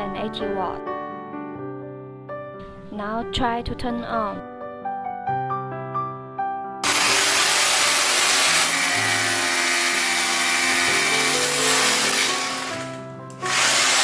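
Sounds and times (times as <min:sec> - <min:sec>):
electric drill running: 0:06.8 - 0:14.0.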